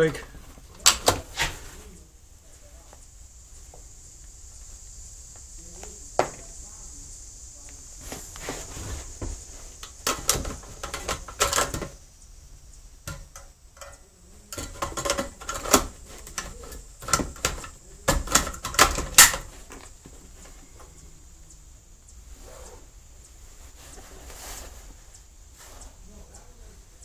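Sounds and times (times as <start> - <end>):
rifle clicks and metallic clatter: 0.7 - 1.4, 9.8 - 12.0, 13.1 - 20.0.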